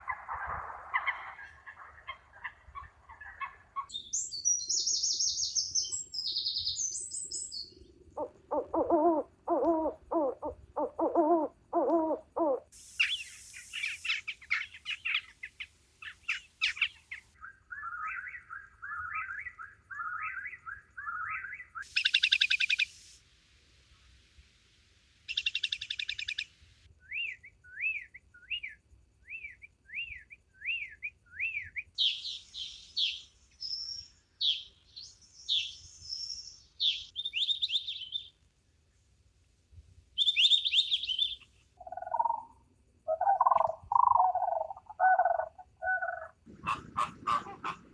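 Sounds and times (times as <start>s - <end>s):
bird calls and chirping: 0.0s - 23.0s, 25.3s - 38.4s, 40.2s - 47.9s
animal calls: 8.2s - 12.7s, 43.1s - 47.9s.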